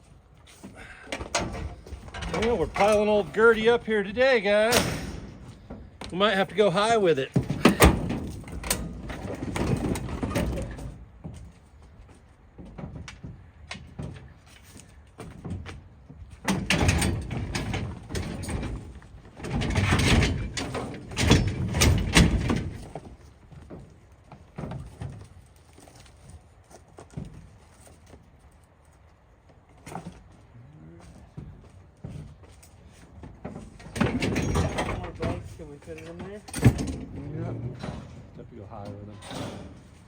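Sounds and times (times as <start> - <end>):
scrap metal clattering: 0.6 - 11.0.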